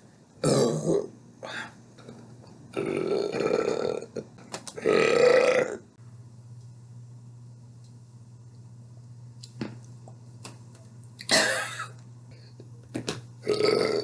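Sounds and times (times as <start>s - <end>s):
low steady hum: 0.0s - 14.0s
person clearing throat: 11.2s - 12.0s.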